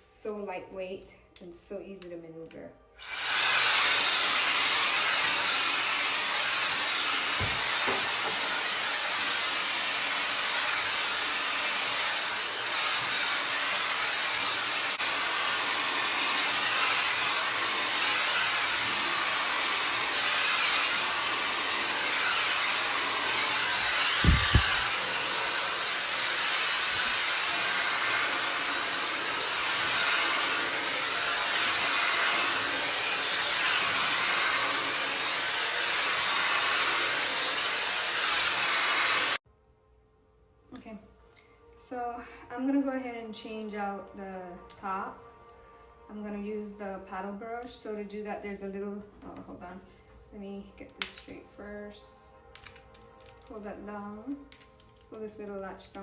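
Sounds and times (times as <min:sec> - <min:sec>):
blow dryer running: 0:03.0 - 0:39.4.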